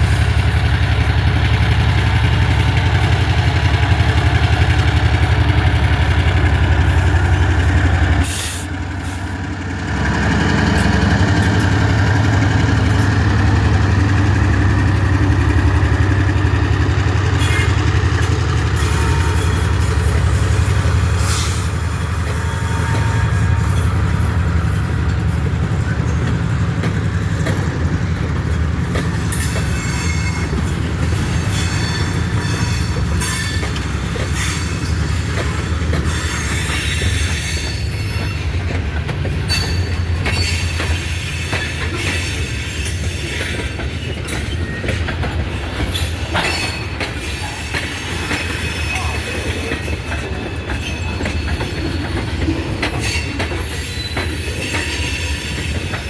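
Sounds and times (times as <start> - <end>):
diesel locomotive low drone: 0.0 - 56.0
wheels clicking and squealing on rails: 0.0 - 56.0.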